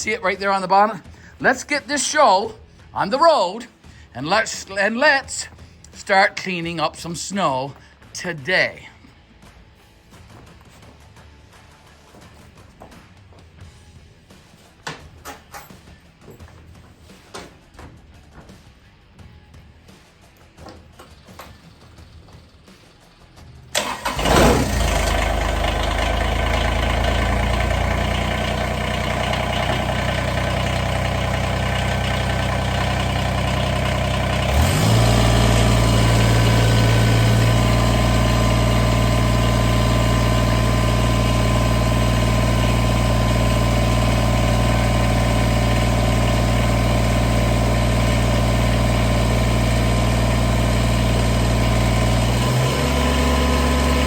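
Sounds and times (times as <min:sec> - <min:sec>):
tractor engine idling: 0:23.7 - 0:54.0.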